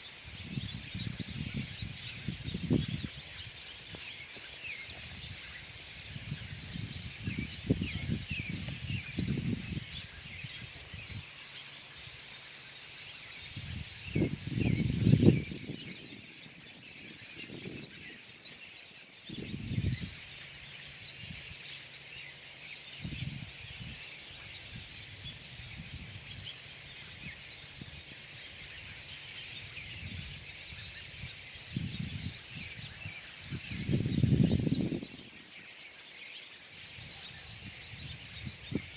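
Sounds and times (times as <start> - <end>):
birds chirping and calling: 0.0 - 38.9.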